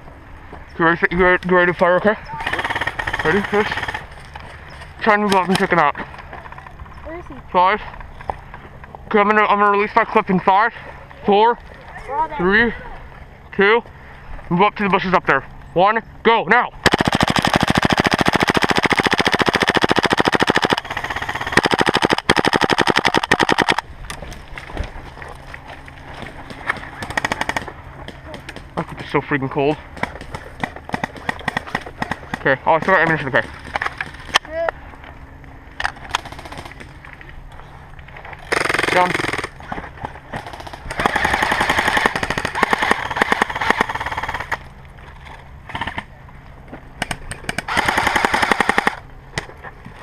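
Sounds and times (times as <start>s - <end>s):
airsoft rifle firing bursts: 2.4s - 4.1s, 16.8s - 23.8s, 26.5s - 27.7s, 38.5s - 39.6s, 40.4s - 44.6s, 47.5s - 49.0s.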